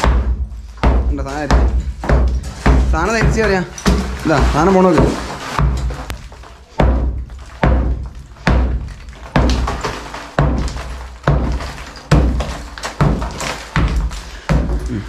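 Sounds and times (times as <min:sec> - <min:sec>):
hammer thuds on concrete: 0:00.0 - 0:15.0.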